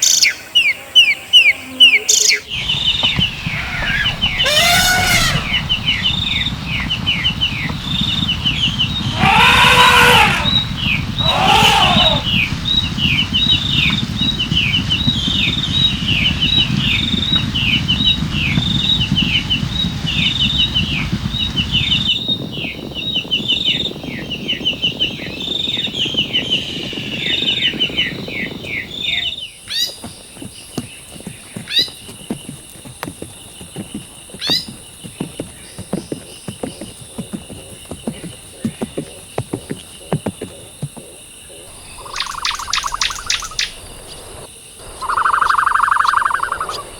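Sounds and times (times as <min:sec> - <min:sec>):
birds chirping: 0:00.0 - 0:46.9
low rumble: 0:02.5 - 0:09.2.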